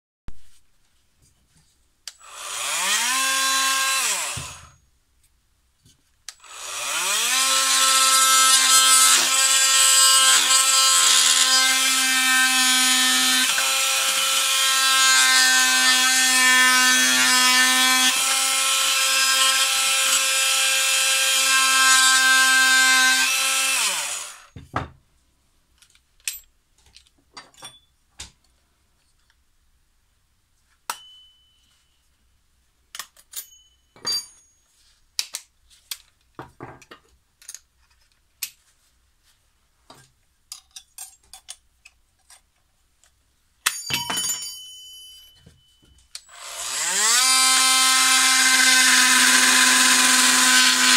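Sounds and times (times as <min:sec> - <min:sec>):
small electric motor whirring: 0:02.2 - 0:04.7, 0:46.3 - 0:50.9.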